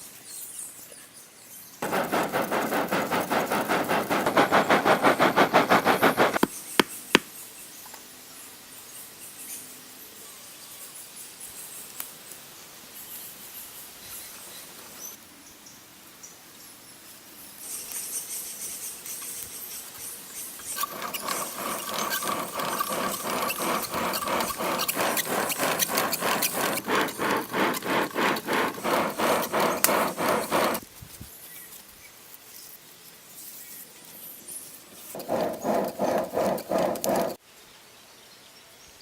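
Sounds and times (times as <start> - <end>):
faint rubbing: 1.8 - 6.9, 20.7 - 30.8, 35.1 - 37.4
hand tool scraping stone: 1.8 - 7.3, 20.6 - 30.8, 35.1 - 37.4.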